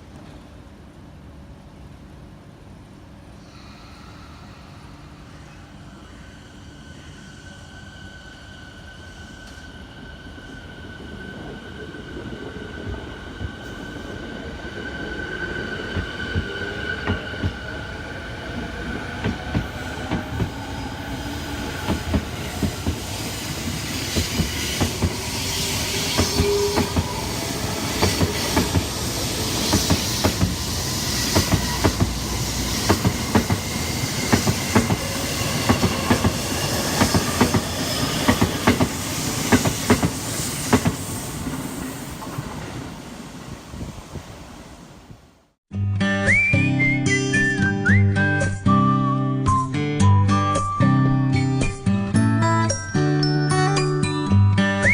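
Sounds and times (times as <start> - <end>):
electric train motors whining: 7.0 - 41.6.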